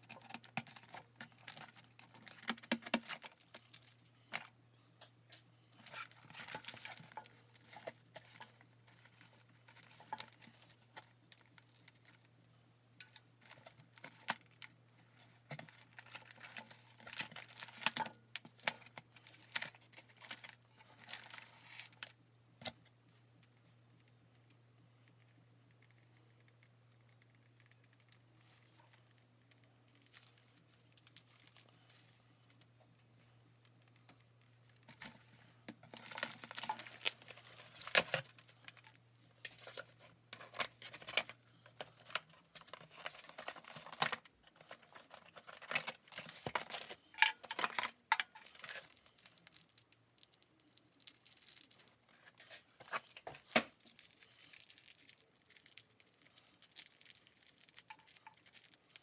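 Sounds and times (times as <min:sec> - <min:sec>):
packaging crinkling: 0:13.4 - 0:22.1, 0:34.7 - 0:59.0.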